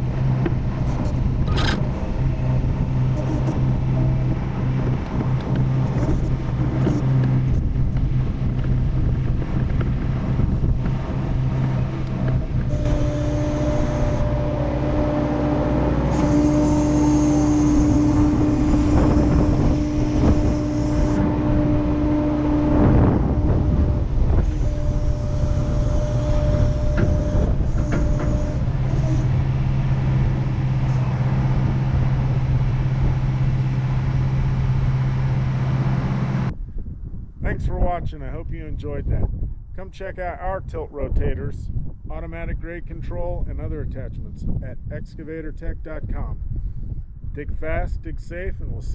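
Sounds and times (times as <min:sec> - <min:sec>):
excavator diesel engine running: 0:00.0 - 0:36.5
hydraulic whine: 0:00.0 - 0:36.6.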